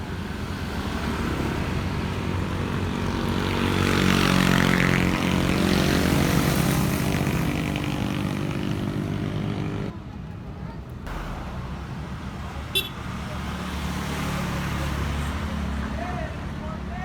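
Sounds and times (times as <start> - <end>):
motor passing by: 2.8 - 9.9.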